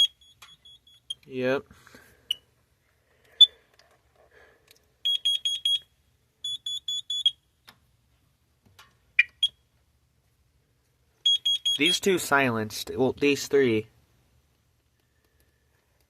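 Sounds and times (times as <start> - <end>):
shrill alarm beeps: 0.0 - 1.3, 5.0 - 7.4, 11.2 - 12.0.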